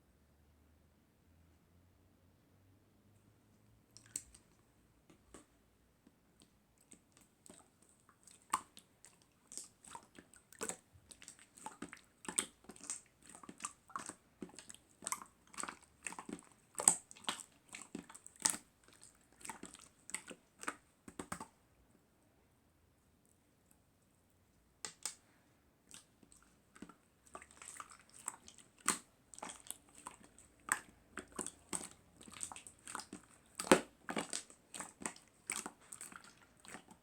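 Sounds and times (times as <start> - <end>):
small wet clicks and pops: 3.9 - 21.6, 23.2 - 37.0.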